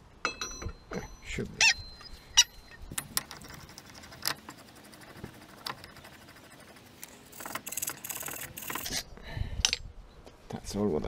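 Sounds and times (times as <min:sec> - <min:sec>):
metal parts and tools clinking: 0:00.2 - 0:04.6.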